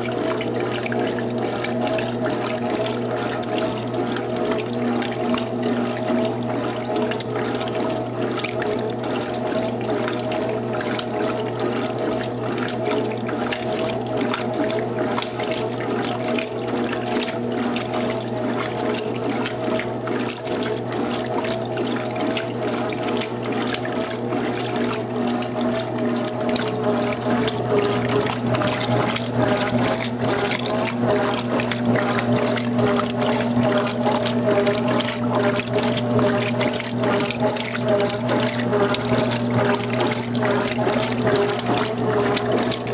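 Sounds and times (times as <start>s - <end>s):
water rushing in washing machine: 0.0s - 42.9s
electrical hum: 23.5s - 42.9s.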